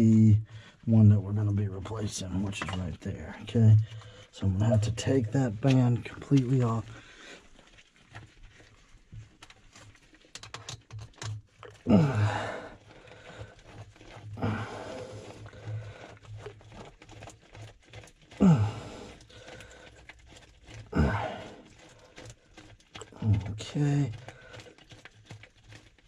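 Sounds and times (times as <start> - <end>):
hands clicking and rattling: 9.3 - 11.9
person grunting with effort: 11.8 - 12.7, 18.4 - 19.0, 21.0 - 21.5.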